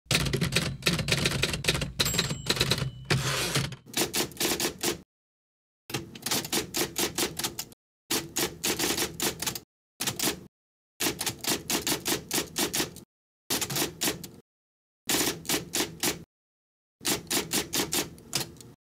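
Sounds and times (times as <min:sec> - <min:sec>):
typewriter keys clacking: 0:00.1 - 0:05.0
typewriter bell ringing: 0:02.0 - 0:03.6.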